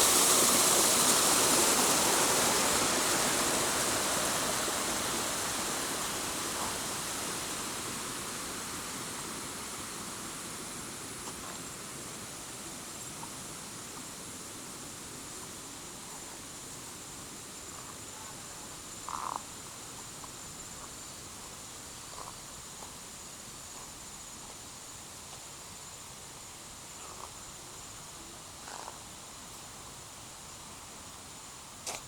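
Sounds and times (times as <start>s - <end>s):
waterfall roar: 0.0s - 17.5s.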